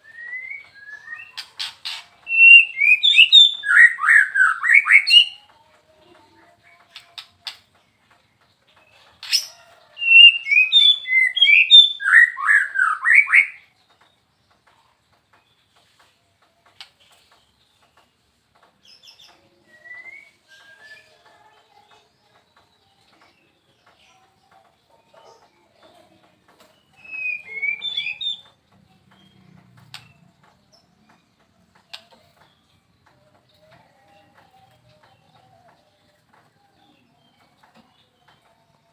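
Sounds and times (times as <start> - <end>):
bird singing clear whistles: 0.0 - 5.4, 10.0 - 13.6, 27.0 - 28.4.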